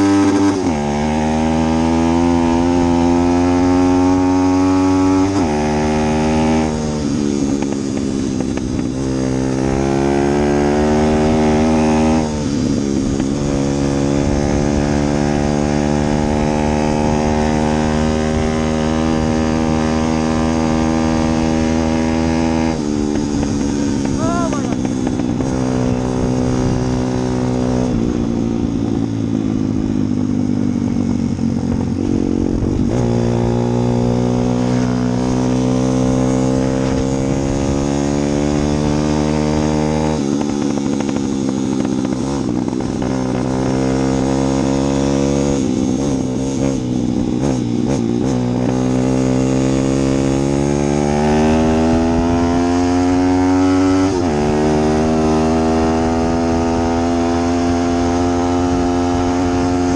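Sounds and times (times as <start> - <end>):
vehicle engine running: 22.8 - 26.9, 27.9 - 38.2.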